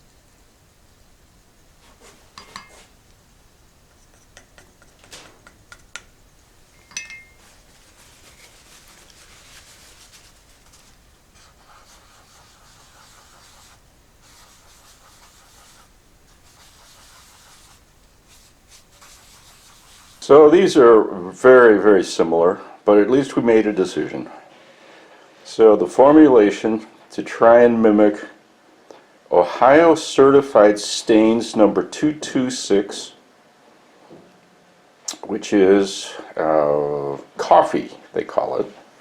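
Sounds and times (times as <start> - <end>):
cans and cup clinking: 2.3 - 3.0, 3.9 - 9.2
rag rubbing on wood: 7.4 - 20.2.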